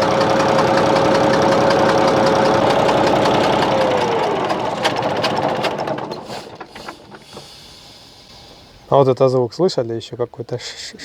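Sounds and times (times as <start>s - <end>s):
diesel engine running with knock: 0.0s - 7.6s.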